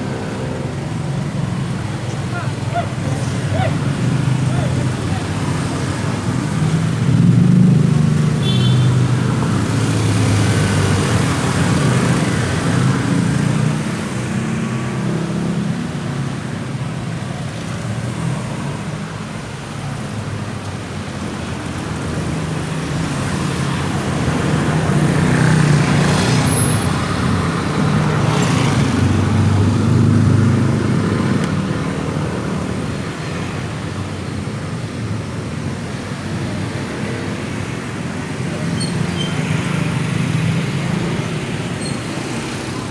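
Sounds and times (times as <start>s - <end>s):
traffic rumbling past: 0.0s - 16.7s, 21.6s - 42.9s.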